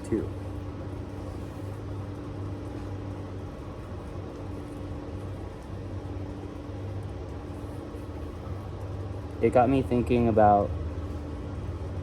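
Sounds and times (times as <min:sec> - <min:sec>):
low mechanical hum with tone: 0:00.0 - 0:12.0.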